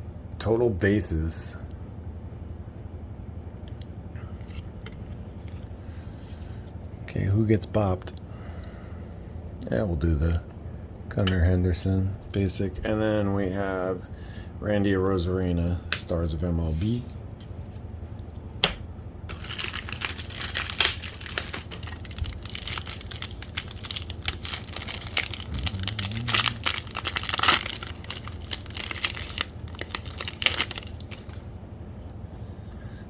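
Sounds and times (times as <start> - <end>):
foil wrapper tearing and crinkling: 19.3 - 31.5.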